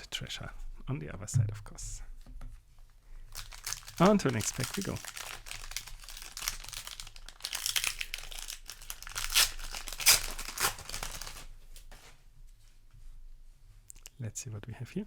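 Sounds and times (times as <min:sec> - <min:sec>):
foil wrapper tearing and crinkling: 0:03.3 - 0:12.0.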